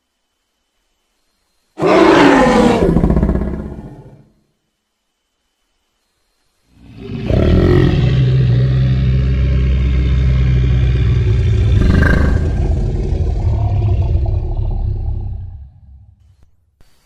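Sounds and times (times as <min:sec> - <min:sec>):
rhinoceros roar: 0:01.8 - 0:04.2, 0:06.8 - 0:16.2.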